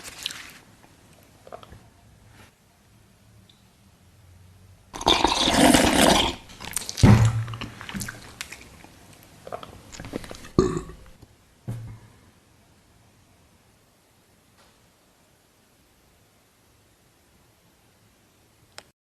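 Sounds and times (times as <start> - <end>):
loud slurp: 5.0 - 6.9
heavy gulp: 5.0 - 8.5, 9.5 - 11.2
wet chewing: 5.0 - 10.6
swallowing: 5.0 - 11.2.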